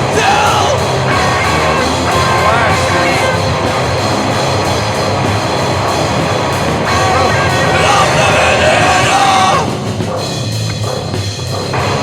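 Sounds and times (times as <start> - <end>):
shouted vocal: 0.0 - 3.4, 6.9 - 9.8
distorted rock band playing: 0.0 - 12.0.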